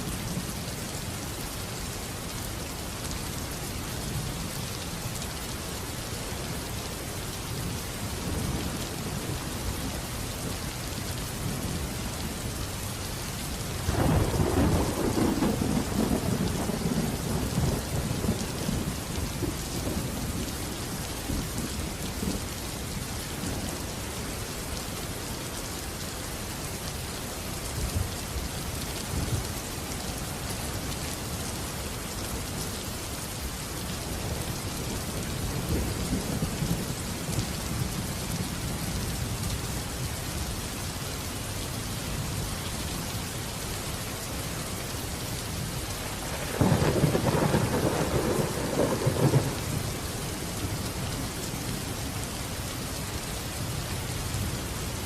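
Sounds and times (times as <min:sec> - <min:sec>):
heavy rain hiss: 0:00.0 - 0:55.0
thunder rumbling: 0:13.9 - 0:20.5, 0:46.2 - 0:50.0.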